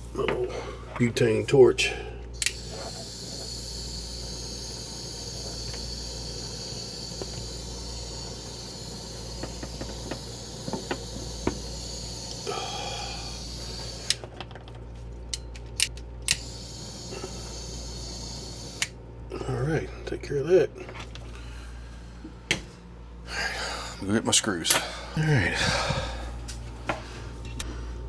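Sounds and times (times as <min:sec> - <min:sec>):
butane torch hissing: 0:02.4 - 0:14.3, 0:16.3 - 0:19.0.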